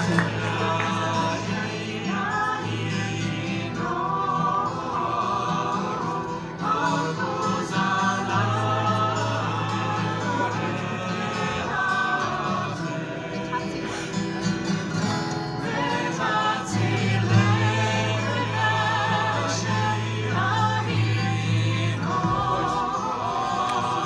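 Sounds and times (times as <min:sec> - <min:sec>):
music with singing voices: 0:00.0 - 0:24.0.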